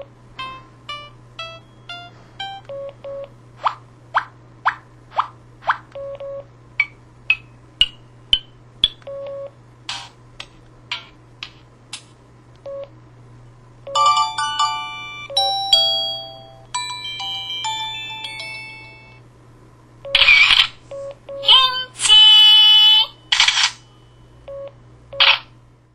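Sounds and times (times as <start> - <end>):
faint low hum: 0.0 - 25.9
synthesized chime melody: 14.0 - 19.2.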